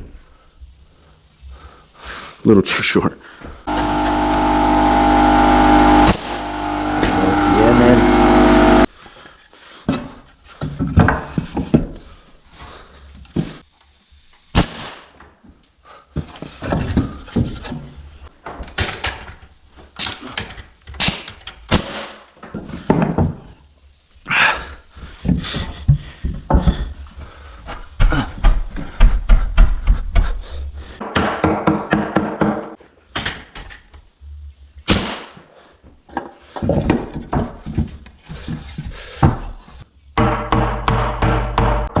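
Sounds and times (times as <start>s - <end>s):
knocks and clatter on walls: 27.7s - 33.4s, 36.1s - 39.6s, 40.2s - 42.0s.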